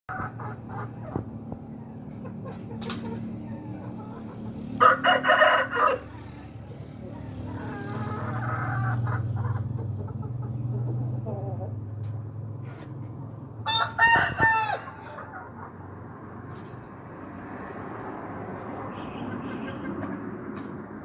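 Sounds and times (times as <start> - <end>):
chicken calls: 0.1 - 11.8, 13.6 - 16.0
rooster crowing: 4.8 - 6.3, 13.6 - 15.3.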